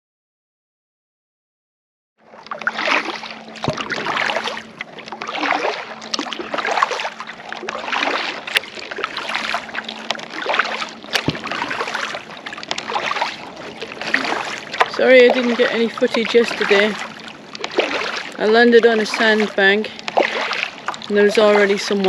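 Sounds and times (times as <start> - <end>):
paddle strokes splashing water: 2.2 - 22.0.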